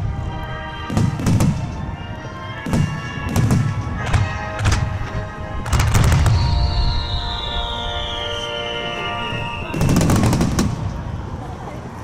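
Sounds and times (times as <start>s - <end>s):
music playing: 0.0s - 10.4s.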